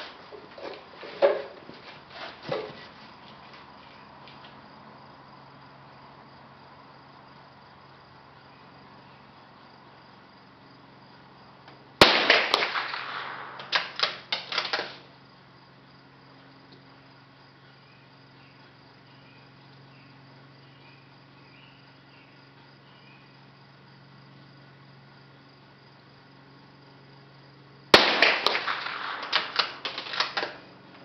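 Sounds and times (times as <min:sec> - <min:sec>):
rifle shot: 0:12.0 - 0:15.0, 0:27.9 - 0:30.6.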